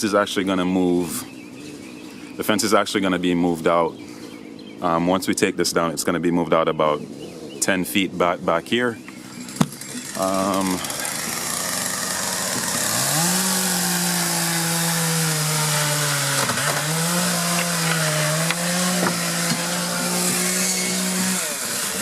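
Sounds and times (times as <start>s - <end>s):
chainsaw cutting at high speed: 9.4s - 22.0s.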